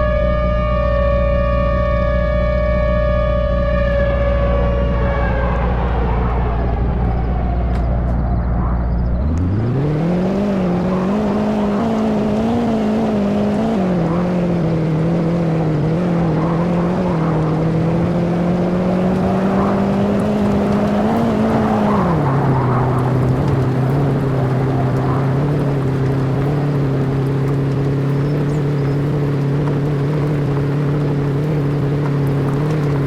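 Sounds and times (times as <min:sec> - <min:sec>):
engine revving: 0:00.0 - 0:33.0.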